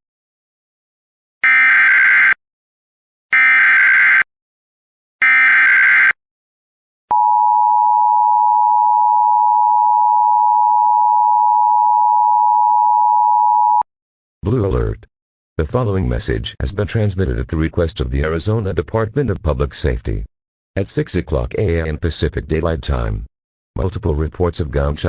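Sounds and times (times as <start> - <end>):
harsh dual tone alert signal: 5.2 - 6.2.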